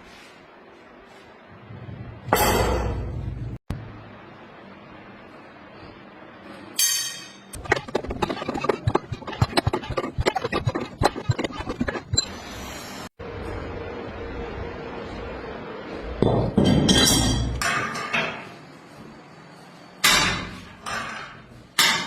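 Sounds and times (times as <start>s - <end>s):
ringing metal hit: 6.8s - 7.5s.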